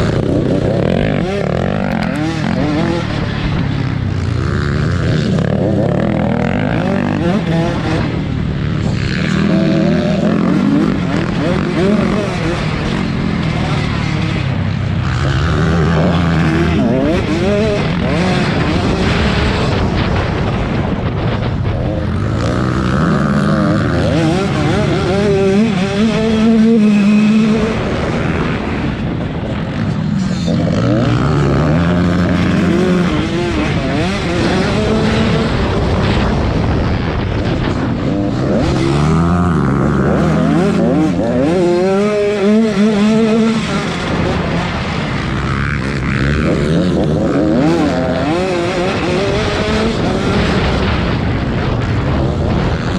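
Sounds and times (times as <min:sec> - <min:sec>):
racing motorcycles revving: 0:00.0 - 0:52.9.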